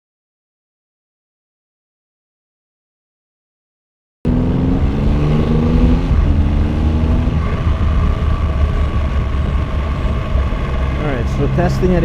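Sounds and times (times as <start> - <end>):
motorcycle engine accelerating: 4.3 - 12.0
wind rumble: 4.3 - 12.0.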